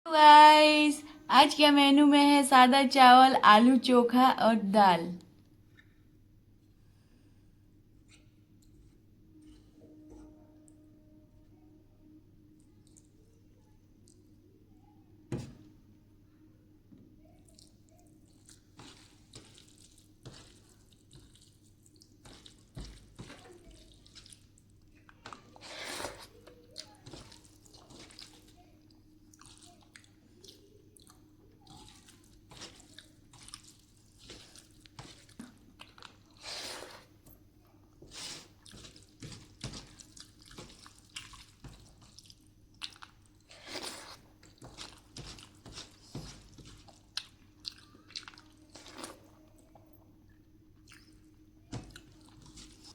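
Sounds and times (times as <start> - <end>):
faint low hum: 0.1 - 52.9
chewing food: 12.6 - 13.3, 14.0 - 14.4, 17.2 - 52.9.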